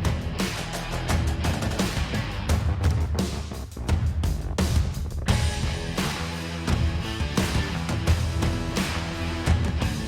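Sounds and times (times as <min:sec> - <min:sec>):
drum beat: 0:00.0 - 0:10.0
electric guitar: 0:05.3 - 0:10.0.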